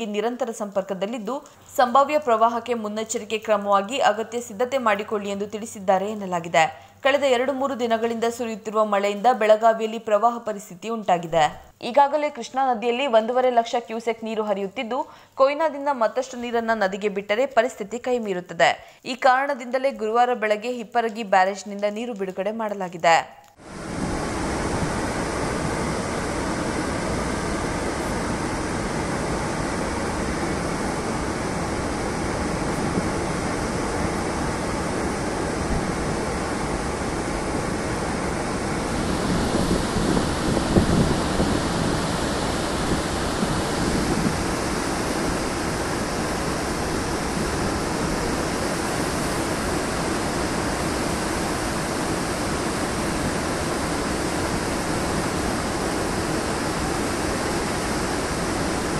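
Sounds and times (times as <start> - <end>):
heavy rushing water: 23.6 - 58.9.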